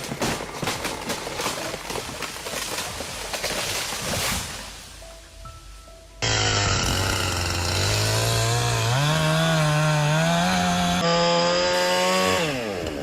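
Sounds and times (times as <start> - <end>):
chainsaw running at high revs: 6.2 - 13.0.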